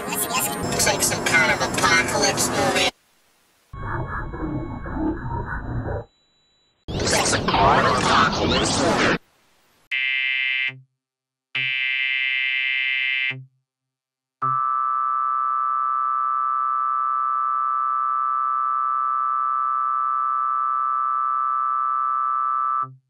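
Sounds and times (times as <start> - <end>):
two-tone attention signal: 3.8 - 6.8, 14.4 - 19.6.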